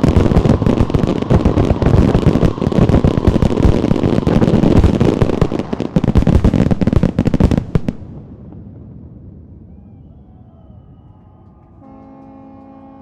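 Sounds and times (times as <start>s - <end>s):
fireworks bangs and crackles: 0.0s - 9.9s
heavy fireworks booms: 0.0s - 10.2s
faint low rumble: 7.8s - 11.8s.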